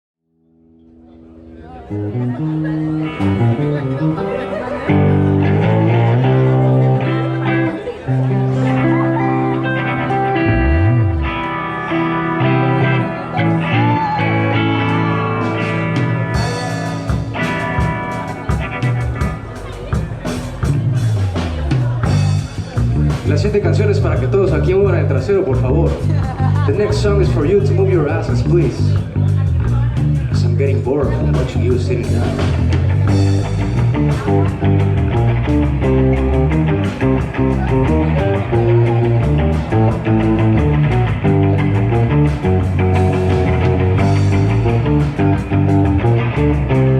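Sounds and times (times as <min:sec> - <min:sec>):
bass: 0:00.3 - 0:46.9
electric guitar with bent notes: 0:00.3 - 0:46.9
drums and cymbals: 0:15.4 - 0:24.9, 0:25.5 - 0:46.9.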